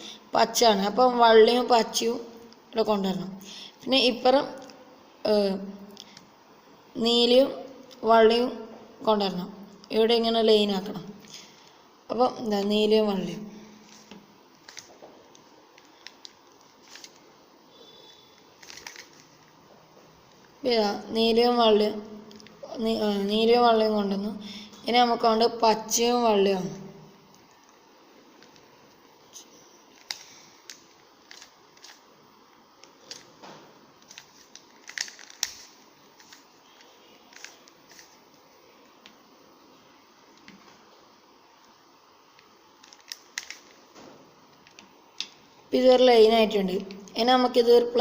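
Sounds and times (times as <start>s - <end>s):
plastic cube clicks: 13.9s - 14.9s, 18.6s - 19.5s, 29.9s - 32.0s, 34.0s - 38.2s, 42.8s - 43.8s.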